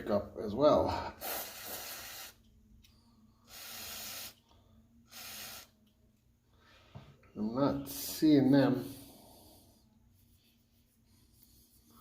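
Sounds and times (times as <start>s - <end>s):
aerosol can spraying: 3.5s - 4.4s, 5.1s - 5.8s.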